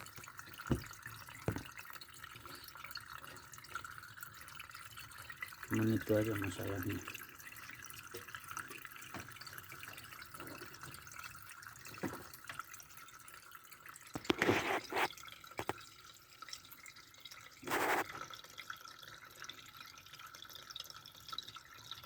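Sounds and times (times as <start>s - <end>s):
water trickling from drain: 0.0s - 22.0s
short splashes or knocks: 0.5s - 1.8s.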